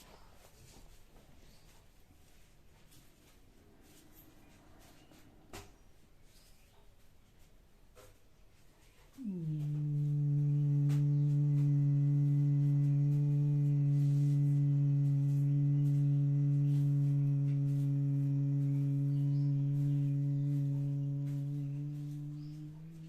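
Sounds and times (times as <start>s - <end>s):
person humming a low note: 9.2s - 23.0s.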